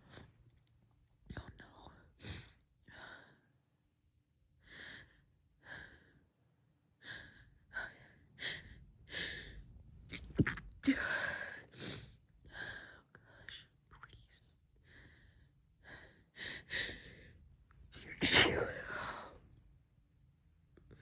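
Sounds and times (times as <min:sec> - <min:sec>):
woman sneezing: 0:18.1 - 0:19.2.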